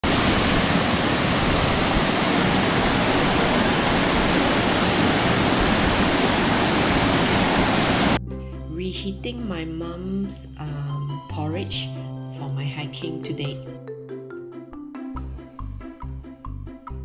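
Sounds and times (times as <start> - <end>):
waterfall rushing: 0.0 - 8.2.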